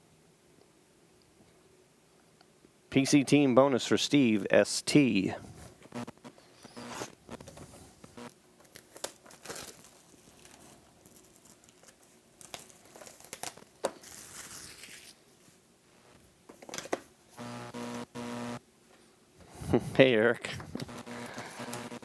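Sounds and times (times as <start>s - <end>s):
scattered clicks and rustles: 5.8s - 9.2s, 20.5s - 22.0s
plastic packaging crinkling and tearing: 8.6s - 15.2s.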